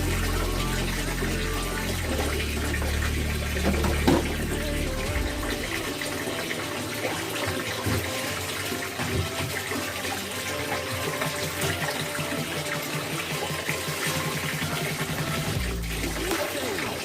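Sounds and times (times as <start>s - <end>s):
plastic parts being washed: 0.0s - 17.0s
tap water running and splashing: 0.0s - 17.0s.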